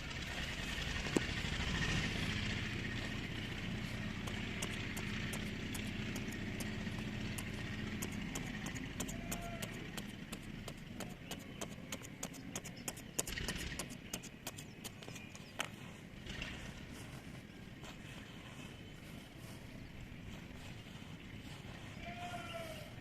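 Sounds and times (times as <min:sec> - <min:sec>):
sharp clicks and rattles: 0:00.0 - 0:17.0
machine engine running: 0:00.0 - 0:23.0.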